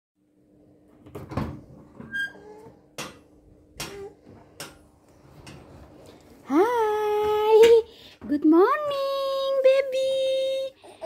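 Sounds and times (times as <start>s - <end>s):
brief high squeak: 2.1s - 2.5s.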